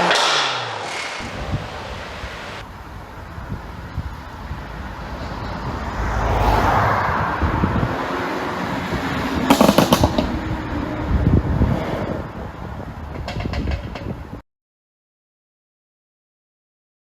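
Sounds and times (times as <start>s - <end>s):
car engine revving: 0.0s - 12.4s
exhaust pops and crackles: 9.4s - 10.4s.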